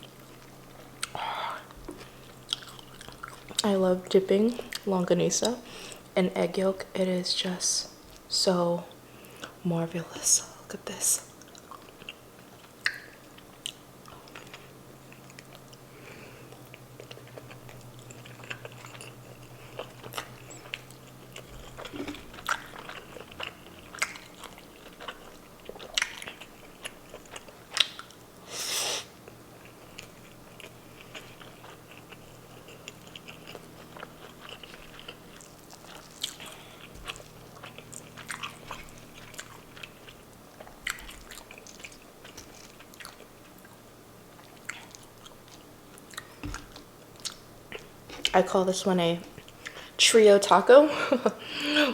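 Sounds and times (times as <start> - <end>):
person chewing food: 0.0 - 3.7, 11.3 - 48.4, 49.3 - 50.0
wet mouth clicks and crunches: 16.6 - 28.2.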